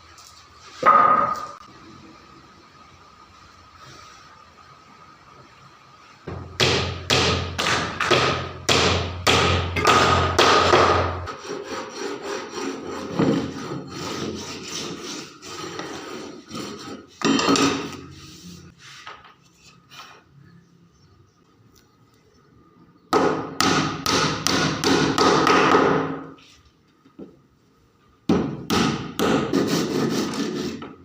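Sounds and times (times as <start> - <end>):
hand tool rubbing on wood: 11.3 - 17.2.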